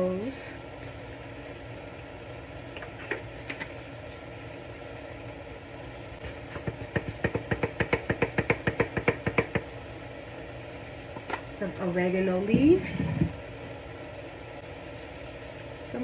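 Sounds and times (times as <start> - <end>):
kitchen hum: 0.0 - 16.0
spice container tapping on pan: 6.2 - 9.8.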